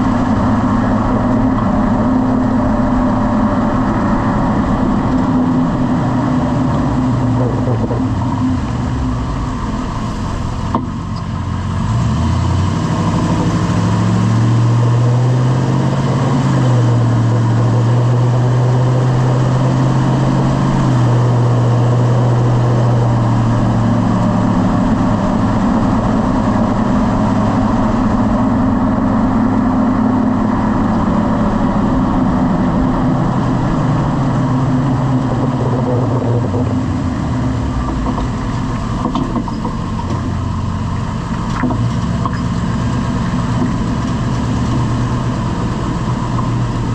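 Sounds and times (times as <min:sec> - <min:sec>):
pickup truck engine accelerating: 0:00.0 - 0:46.9.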